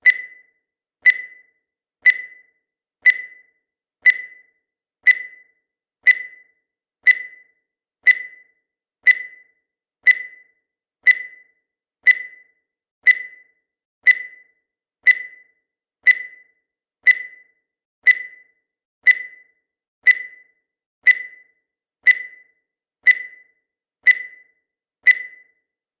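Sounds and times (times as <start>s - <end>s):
high-pitched timer ticks: 0.0s - 25.7s.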